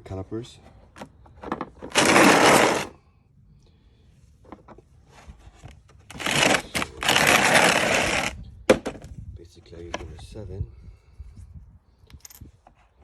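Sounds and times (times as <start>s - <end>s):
tool kit rattling and rustling: 0.8s - 2.9s, 4.4s - 9.2s, 9.8s - 10.3s.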